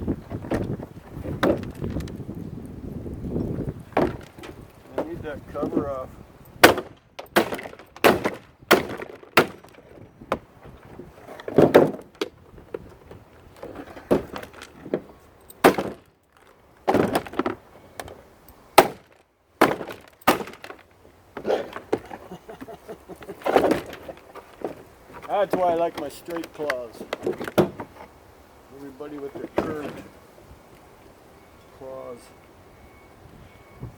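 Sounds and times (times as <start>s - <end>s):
plastic scraping and crunching: 0.3s - 2.3s, 3.9s - 18.2s, 18.8s - 22.3s, 23.2s - 28.1s, 28.9s - 30.2s.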